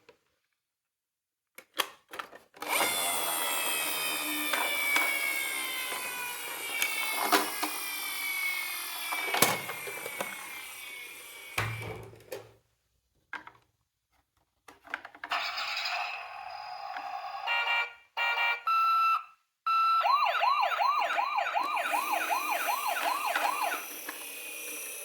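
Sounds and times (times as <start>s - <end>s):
toy car gearing whirring: 2.6s - 11.6s, 15.2s - 17.5s, 20.8s - 25.0s
toy scraping and rubbing: 21.6s - 25.0s.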